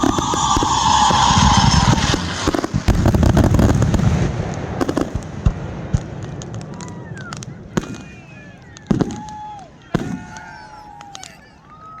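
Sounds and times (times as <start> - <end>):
firework whistle: 0.0 - 4.2
low rumble: 0.0 - 4.5
fireworks booming and crackling: 0.0 - 11.4.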